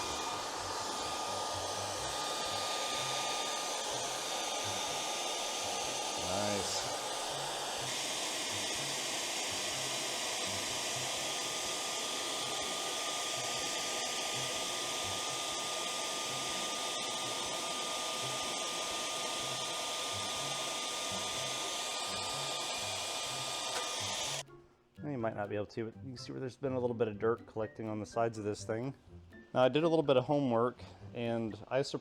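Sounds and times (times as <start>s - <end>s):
fan motor high whine: 0.0s - 24.4s
hot-air blower running: 0.0s - 24.4s.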